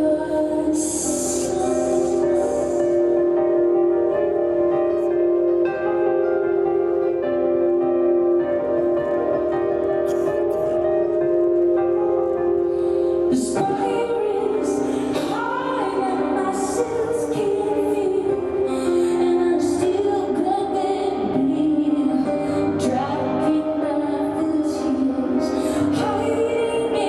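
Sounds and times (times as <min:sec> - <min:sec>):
woman singing: 0:00.0 - 0:03.4, 0:13.2 - 0:27.0
instrumental accompaniment: 0:00.0 - 0:27.0.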